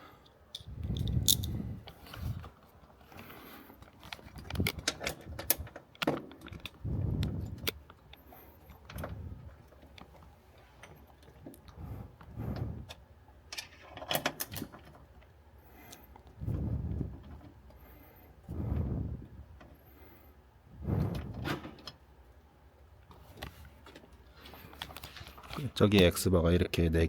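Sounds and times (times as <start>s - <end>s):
socket wrench clicking: 0.5s - 1.6s.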